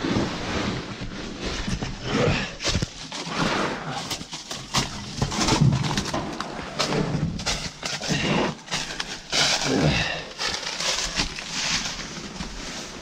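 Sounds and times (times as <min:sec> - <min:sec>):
debris scraping and crunching: 0:00.0 - 0:13.0
man breathing hard and grunting: 0:09.6 - 0:10.4.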